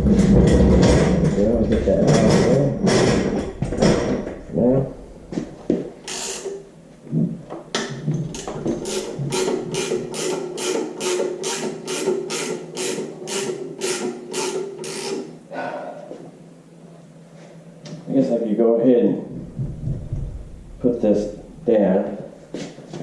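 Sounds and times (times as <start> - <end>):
loose metallic knocks: 0.1 - 4.5
ratchet clicking: 6.0 - 6.6, 8.3 - 15.3.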